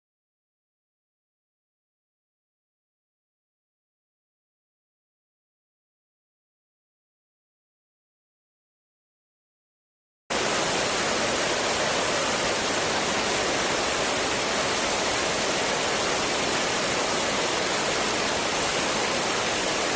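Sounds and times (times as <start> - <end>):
rushing water roar: 10.3 - 19.9.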